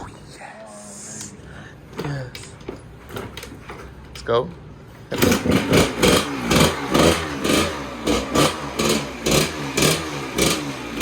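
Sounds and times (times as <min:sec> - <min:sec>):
dirt bike engine revving: 0:05.1 - 0:11.0.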